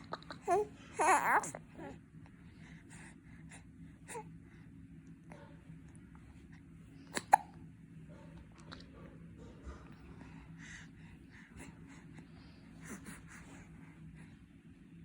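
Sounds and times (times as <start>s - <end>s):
baby whimpering and fussing: 0.2s - 2.0s
baby hiccup: 7.2s - 7.6s.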